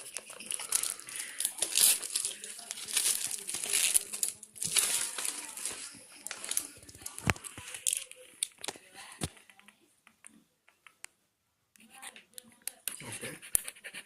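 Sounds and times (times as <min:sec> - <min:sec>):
packaging crinkling and tearing: 0:00.0 - 0:08.8.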